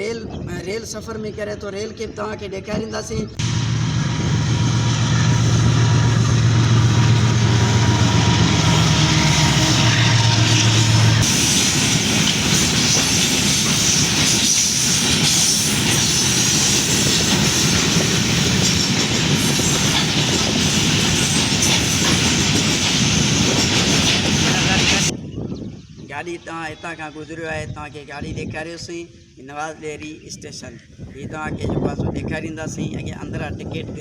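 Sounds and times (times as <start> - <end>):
locomotive engine drone: 3.4 - 25.1
train wheels on rails: 3.4 - 25.1.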